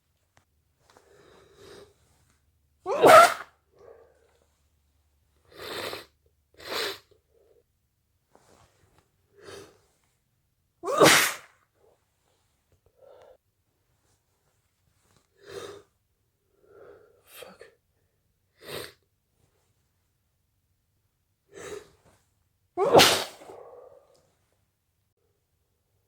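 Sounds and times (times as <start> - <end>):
person sneezing: 2.9 - 4.0, 10.8 - 11.5, 22.8 - 24.0
short sharp breathy sounds: 22.8 - 24.2.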